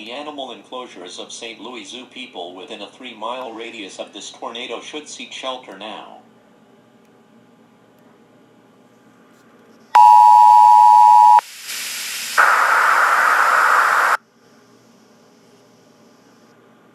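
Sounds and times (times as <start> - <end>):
two-tone attention signal: 10.0 - 11.4
static hiss: 10.8 - 14.2.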